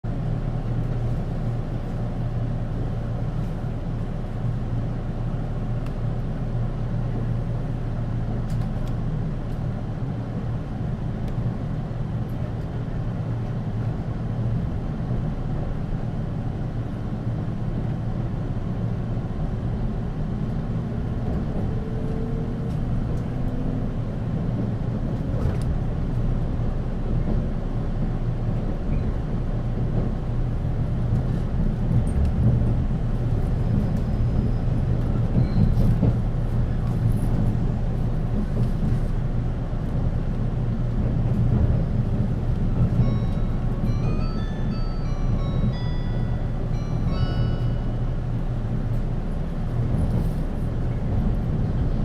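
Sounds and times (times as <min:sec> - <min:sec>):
train running gear hum: 0:00.0 - 0:52.0.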